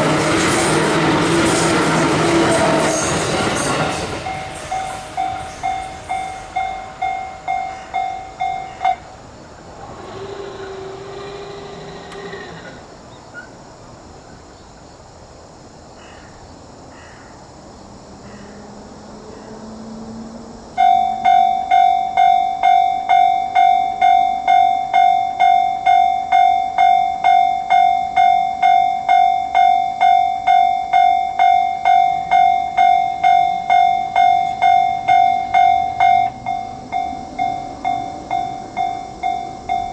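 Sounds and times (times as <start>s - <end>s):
railroad crossing bell ringing: 0.0s - 9.2s, 20.7s - 39.9s.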